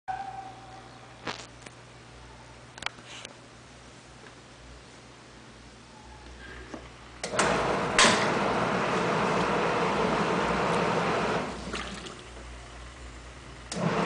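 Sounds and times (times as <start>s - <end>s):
washing machine motor and churning water: 7.2s - 12.7s, 13.6s - 14.0s.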